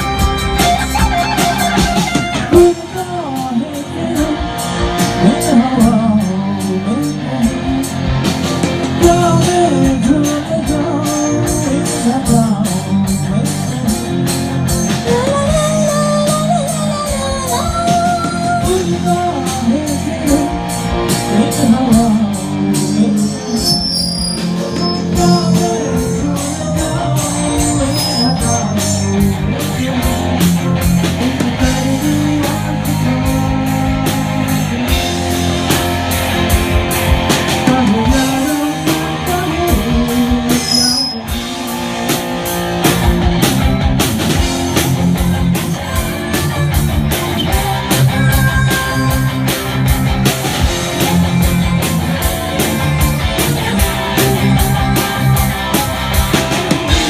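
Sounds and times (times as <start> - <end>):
rock band playing: 0.0 - 57.0
person singing: 0.8 - 35.6, 37.4 - 41.5, 47.4 - 49.6, 53.4 - 57.0.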